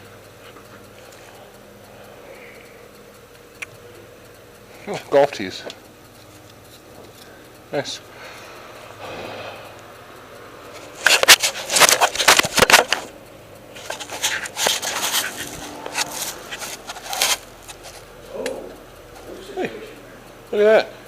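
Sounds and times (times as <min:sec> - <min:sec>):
tools scraping and rattling: 0:10.7 - 0:13.1, 0:13.7 - 0:18.1.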